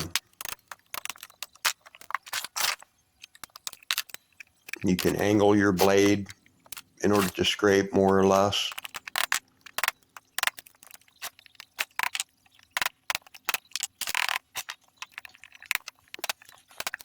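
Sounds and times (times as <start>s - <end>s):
razor blade scraping wallpaper: 7.0s - 7.5s.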